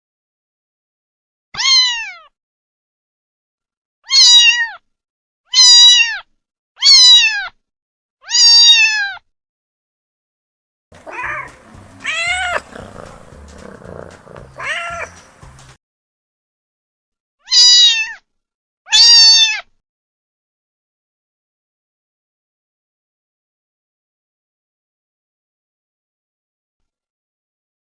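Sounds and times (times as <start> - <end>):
kittens meowing: 11.0 - 15.8.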